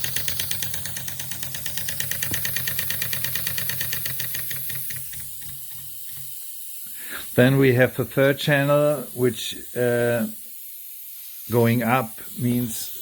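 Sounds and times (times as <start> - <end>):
steam pump beating: 0.0 - 10.4
steam hiss: 0.0 - 13.0.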